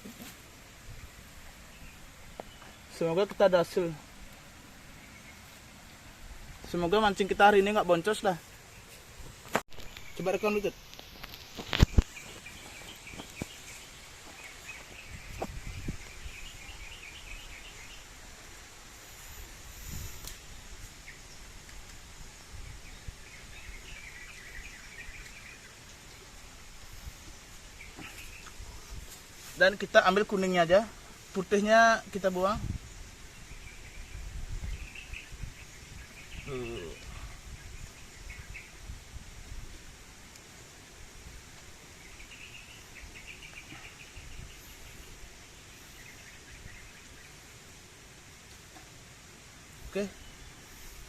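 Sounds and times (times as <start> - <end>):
outdoor hiss: 0.0 - 51.0.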